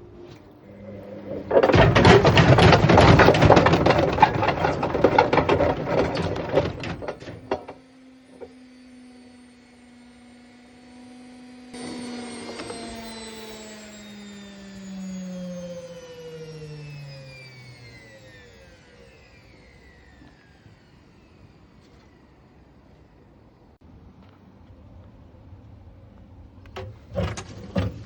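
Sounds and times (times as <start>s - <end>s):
washing machine drum clattering: 0.8s - 7.7s
motor whine: 6.8s - 23.8s.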